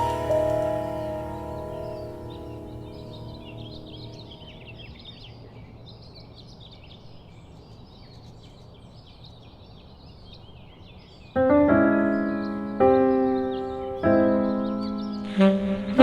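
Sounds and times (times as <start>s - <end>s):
music notes: 0.0s - 4.8s, 11.4s - 16.0s
small birds chirping: 0.0s - 16.0s.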